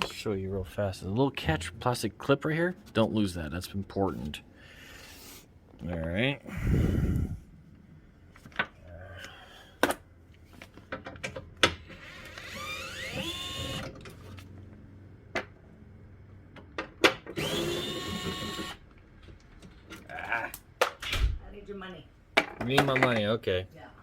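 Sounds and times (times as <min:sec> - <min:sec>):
small electric motor whining: 0:12.0 - 0:13.9, 0:17.4 - 0:18.8.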